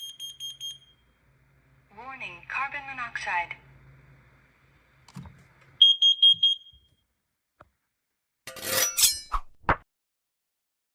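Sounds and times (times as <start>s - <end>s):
alarm high-pitched beeps: 5.8s - 6.8s.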